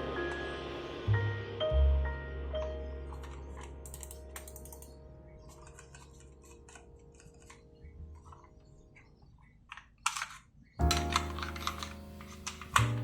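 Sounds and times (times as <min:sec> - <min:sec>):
background music: 0:00.0 - 0:09.4, 0:10.8 - 0:13.0
loud rustling: 0:10.0 - 0:13.0.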